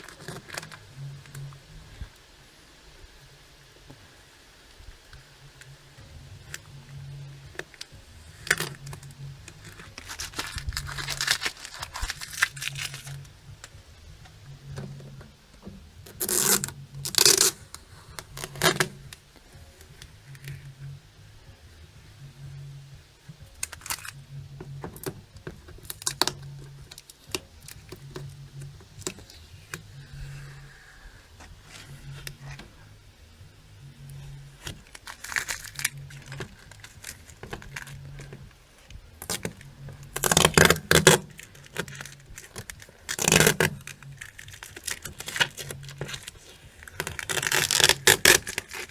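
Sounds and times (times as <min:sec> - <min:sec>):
tape and paper tearing: 0:09.6 - 0:13.2, 0:16.1 - 0:17.6, 0:18.2 - 0:19.0, 0:34.6 - 0:38.3, 0:39.2 - 0:48.9.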